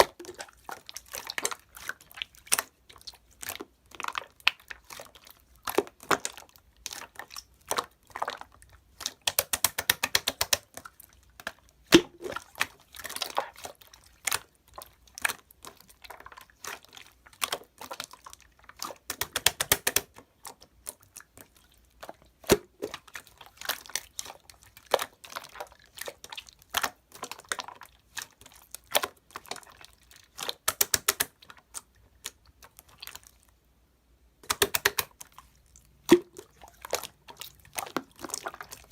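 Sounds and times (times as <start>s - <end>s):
slime squeezed with bubble pops: 11.4s - 21.4s, 22.3s - 33.2s, 34.4s - 38.9s.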